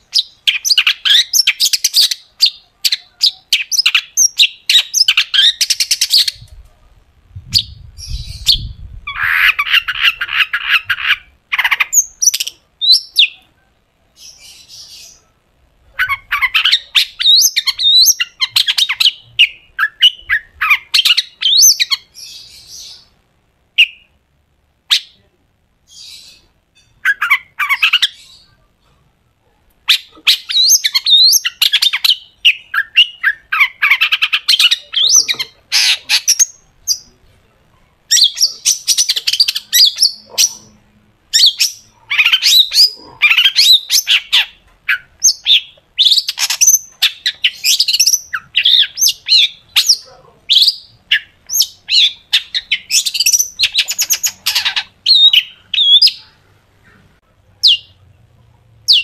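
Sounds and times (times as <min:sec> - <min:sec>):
shrike singing harsh chattering song: 0:15.9 - 0:23.2.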